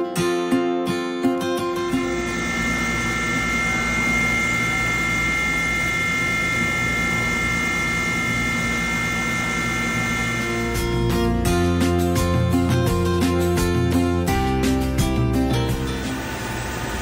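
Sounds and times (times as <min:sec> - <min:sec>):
milling machine whine: 0:01.8 - 0:11.4, 0:15.4 - 0:17.0
spindle cutting hiss: 0:01.9 - 0:10.8.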